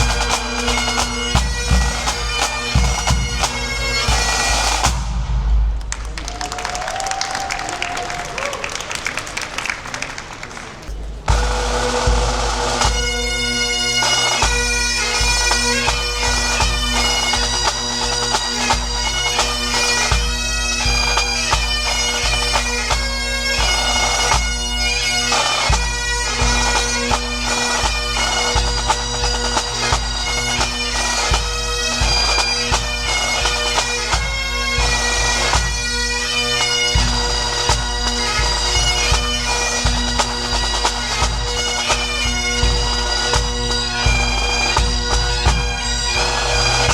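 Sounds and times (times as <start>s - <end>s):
bagpipe music: 0.0s - 5.5s, 10.9s - 46.9s
low drumbeat: 0.0s - 6.4s, 10.9s - 13.7s.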